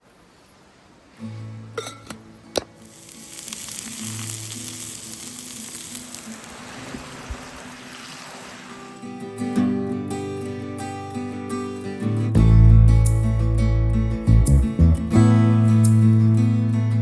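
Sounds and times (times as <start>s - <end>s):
food sizzling in a hot pan: 2.8s - 9.0s.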